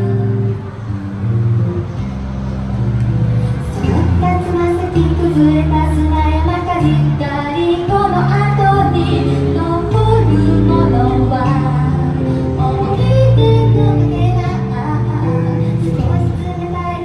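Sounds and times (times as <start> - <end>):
low bass notes: 0.0 - 17.0
woman singing: 3.6 - 17.0.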